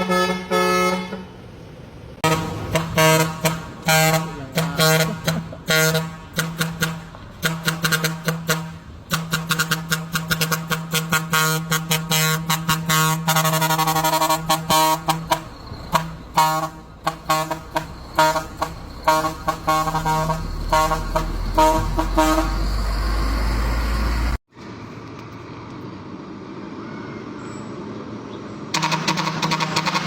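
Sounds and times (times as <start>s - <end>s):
vehicle air horn blasts: 0.0s - 1.3s, 2.2s - 23.0s, 28.7s - 30.0s
low rumble: 14.6s - 24.4s.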